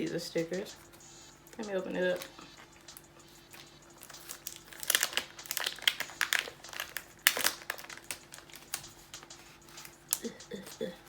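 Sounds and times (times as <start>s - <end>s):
wrapper crinkling: 3.5s - 8.9s.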